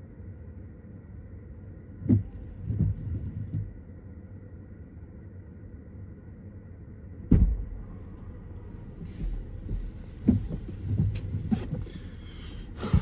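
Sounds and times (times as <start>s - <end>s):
car interior hum: 7.2s - 13.0s
sharp heavy thump: 7.3s - 11.7s
soft knocks and rustles: 9.0s - 13.0s.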